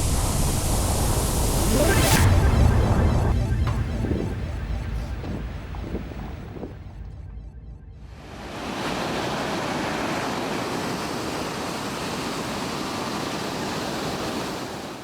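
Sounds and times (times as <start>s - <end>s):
wind: 8.1s - 15.0s
ocean surf: 8.2s - 15.0s.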